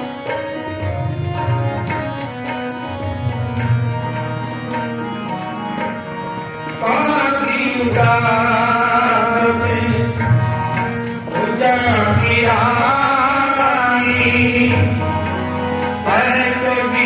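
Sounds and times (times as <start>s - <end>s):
harmonium: 0.0s - 17.0s
tabla beat: 0.0s - 17.0s
person singing: 16.0s - 17.0s.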